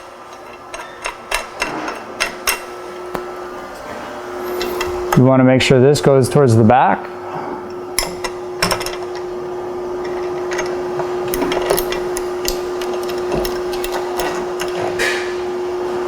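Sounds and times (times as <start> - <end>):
steady hum: 0.0 - 16.0
bicycle parts clicking: 10.0 - 14.8.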